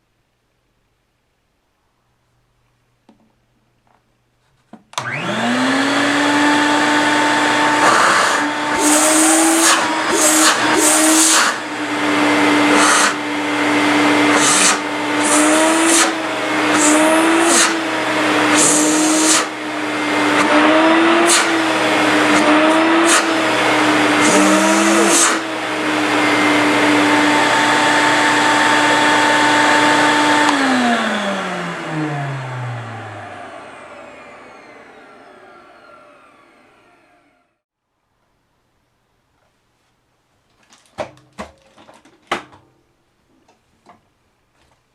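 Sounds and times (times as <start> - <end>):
vacuum motor whine: 5.0 - 37.6
rushing air at nozzle: 7.8 - 11.6, 12.7 - 13.2, 14.3 - 17.9, 18.5 - 19.6.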